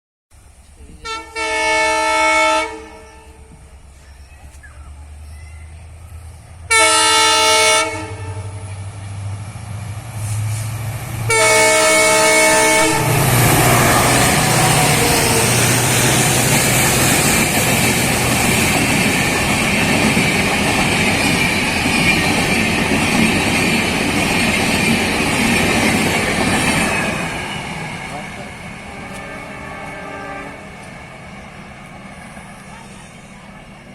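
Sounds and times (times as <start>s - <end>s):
train wheels on rails rushing past: 0.4s - 33.9s
train horn: 0.8s - 3.6s, 6.7s - 8.8s, 11.3s - 17.7s, 28.8s - 30.9s.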